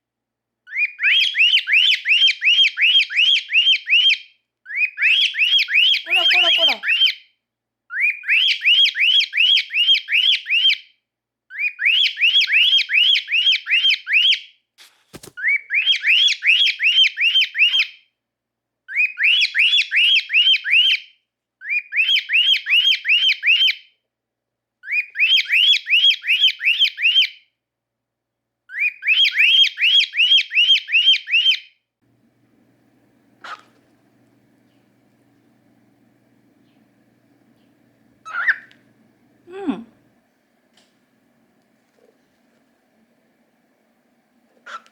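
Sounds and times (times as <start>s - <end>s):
cockatiel chirping: 32.3s - 35.6s, 36.6s - 39.0s, 44.6s - 44.9s.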